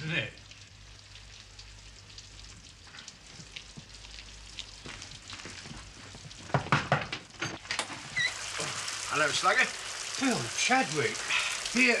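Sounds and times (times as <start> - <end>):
heavy rain falling: 8.5 - 12.0.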